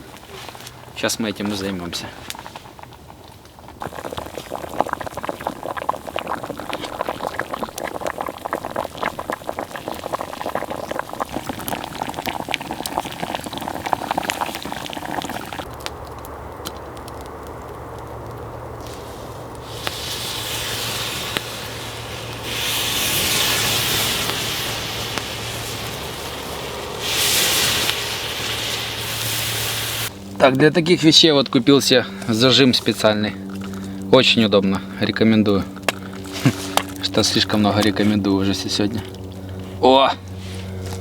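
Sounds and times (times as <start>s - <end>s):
campfire crackling: 0.0s - 41.0s
sizzling hiss of fat: 3.8s - 15.7s, 18.7s - 30.2s.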